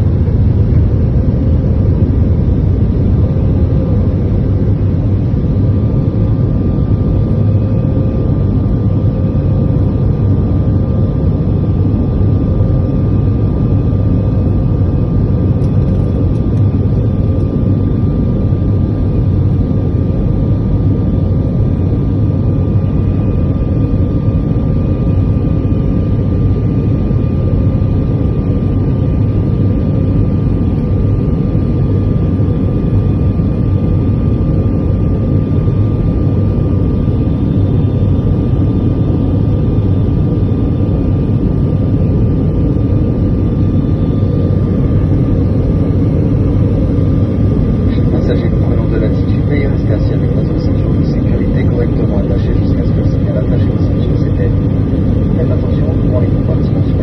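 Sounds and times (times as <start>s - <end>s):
faint engine whines: 0.0s - 57.0s
jet engines droning in cabin: 0.0s - 57.0s.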